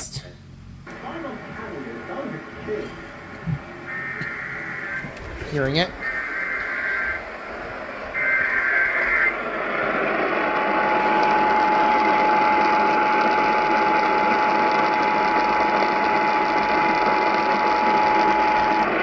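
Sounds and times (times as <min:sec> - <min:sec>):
radio static hiss: 0:00.0 - 0:19.0
single-pitch warning alarm tone: 0:03.8 - 0:05.1, 0:05.9 - 0:09.6
digital data burst: 0:04.0 - 0:14.6.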